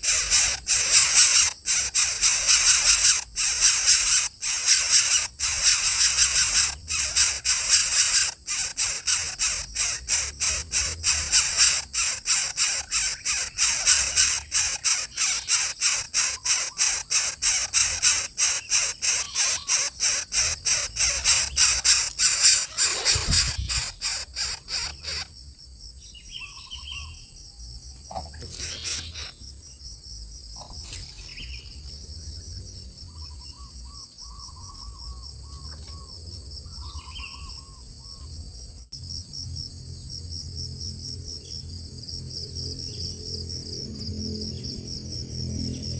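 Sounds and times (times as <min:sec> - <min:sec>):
loud fast rasping pulses: 0:00.0 - 0:25.3, 0:28.4 - 0:29.4
short bird calls: 0:00.0 - 0:25.3, 0:28.4 - 0:29.4
high insect trill: 0:00.0 - 0:45.9.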